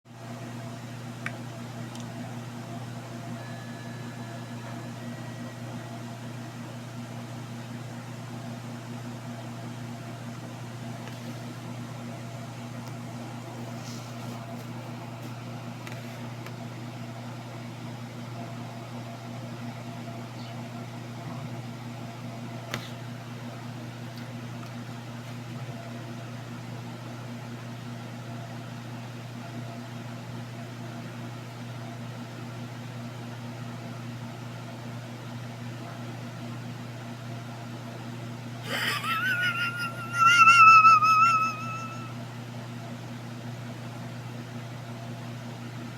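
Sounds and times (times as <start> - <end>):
low mechanical hum: 0.1 - 45.9
wavering high-pitched tone: 3.3 - 6.0, 40.4 - 42.2.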